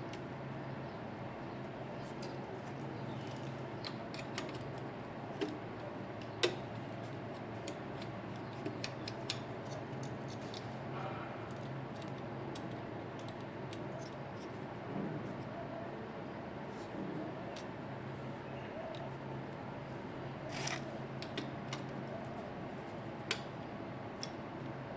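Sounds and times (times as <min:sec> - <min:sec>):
low machine hum: 0:00.0 - 0:24.9.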